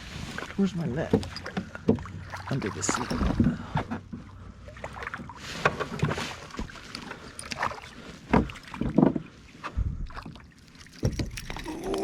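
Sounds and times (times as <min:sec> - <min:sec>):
knocks and scrapes in a boat: 0:00.0 - 0:11.7.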